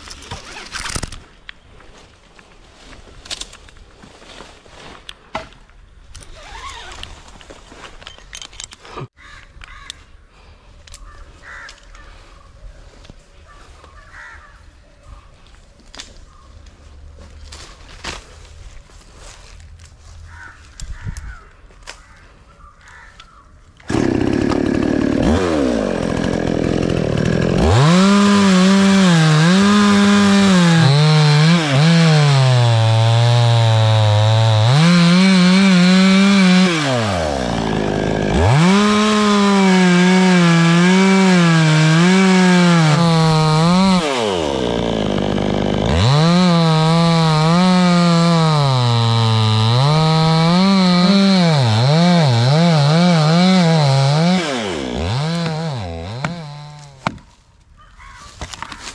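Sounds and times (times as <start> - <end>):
chainsaw cutting wood: 0.0 - 1.2, 23.8 - 57.3.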